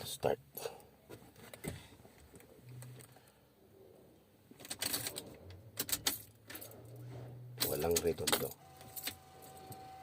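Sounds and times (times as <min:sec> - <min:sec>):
ignition key clicks and rattle: 0:04.6 - 0:06.9, 0:07.6 - 0:09.8.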